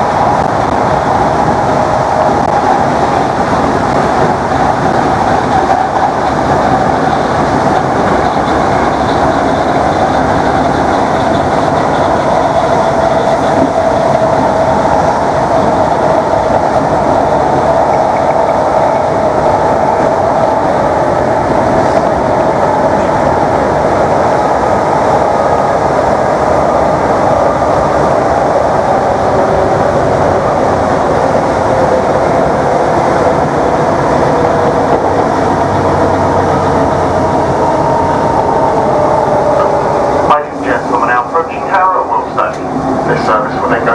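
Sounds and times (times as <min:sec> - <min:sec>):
train running noise: 0:00.0 - 0:43.9
electric traction motors whining: 0:01.1 - 0:25.8.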